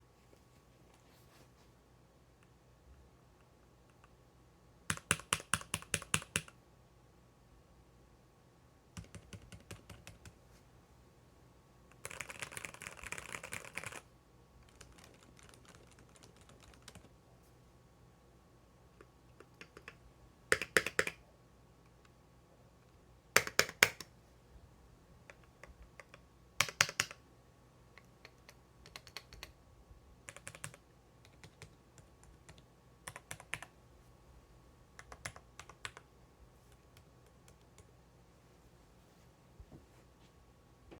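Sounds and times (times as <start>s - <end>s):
typing on mechanical keyboard: 4.9s - 6.6s, 9.0s - 10.4s, 11.9s - 17.1s, 19.5s - 21.2s, 25.6s - 27.2s, 28.2s - 29.6s, 30.2s - 33.7s, 35.0s - 36.0s.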